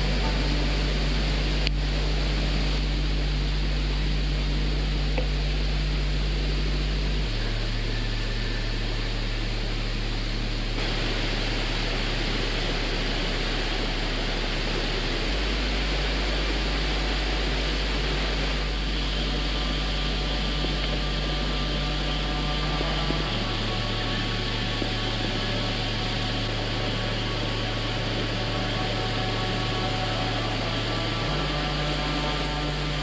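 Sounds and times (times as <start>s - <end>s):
low hum: 0.0s - 33.0s
mountain stream rushing: 10.8s - 33.0s.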